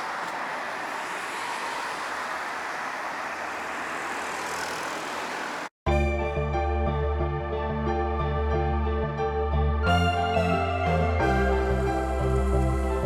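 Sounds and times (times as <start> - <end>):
sustained keyboard music: 5.9 - 13.0.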